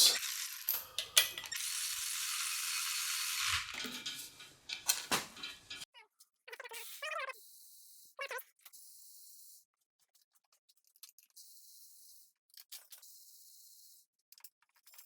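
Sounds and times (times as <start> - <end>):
metal clinks of hand tools: 0.2 - 1.7, 3.7 - 5.8.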